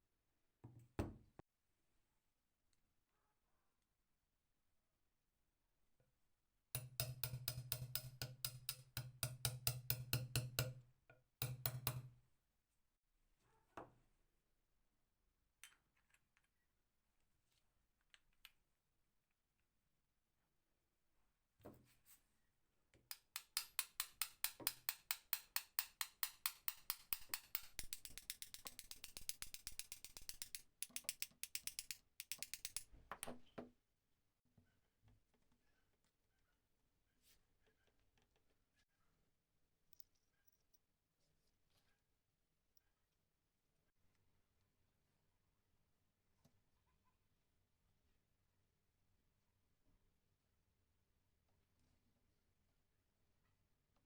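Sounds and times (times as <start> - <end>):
hand drill gears clicking: 23.1 - 32.9.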